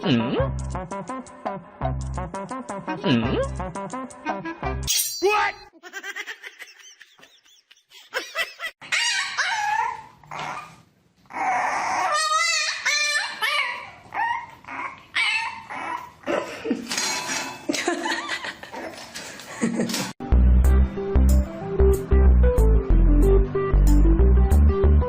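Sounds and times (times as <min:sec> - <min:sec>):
dog barking and whining: 0:08.8 - 0:16.2.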